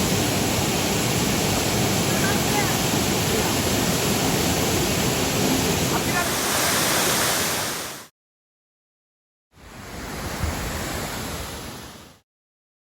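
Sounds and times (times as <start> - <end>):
waterfall rushing: 0.0 - 8.1.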